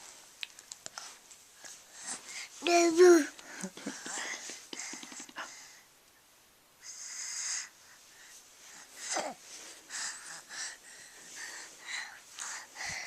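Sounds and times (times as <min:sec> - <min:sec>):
person wheezing breaths: 0:08.8 - 0:13.0.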